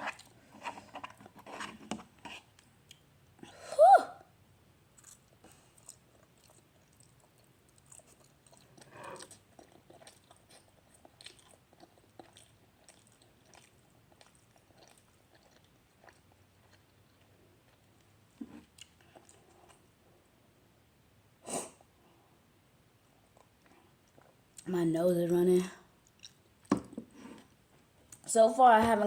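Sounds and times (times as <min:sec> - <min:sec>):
faint wet chewing: 0:05.0 - 0:20.0, 0:23.0 - 0:24.7, 0:26.0 - 0:28.3.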